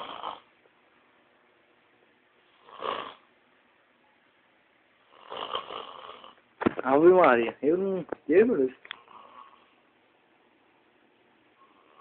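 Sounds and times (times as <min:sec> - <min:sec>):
snoring: 0:00.0 - 0:00.5, 0:02.5 - 0:03.3, 0:05.1 - 0:06.4, 0:11.6 - 0:12.0.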